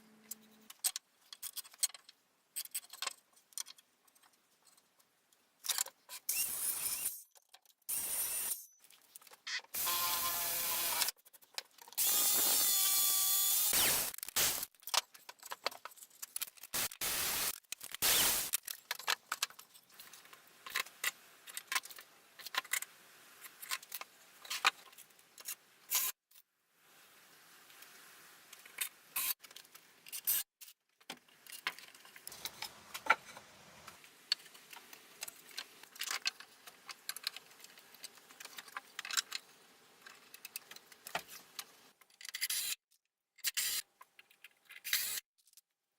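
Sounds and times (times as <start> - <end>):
tools and wood clicking and knocking: 0.3 - 7.9, 10.9 - 12.7, 13.8 - 26.1, 28.6 - 42.8, 43.4 - 45.7
loud steady burst: 16.8 - 18.5.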